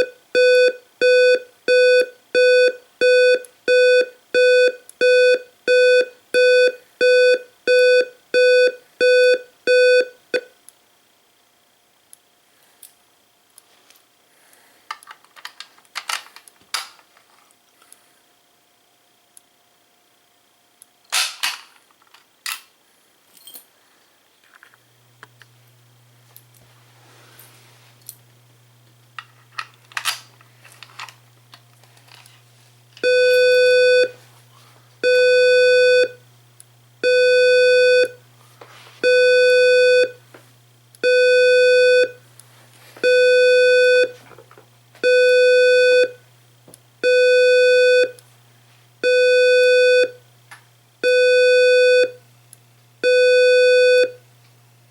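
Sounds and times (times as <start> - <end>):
fire alarm pulsing buzzy tone: 0.0 - 10.5, 33.0 - 34.2, 35.0 - 36.2, 37.0 - 38.2, 39.0 - 40.2, 41.0 - 42.2, 43.0 - 44.2, 45.0 - 46.2, 47.0 - 48.2, 49.0 - 50.2, 51.0 - 52.2, 53.0 - 54.2.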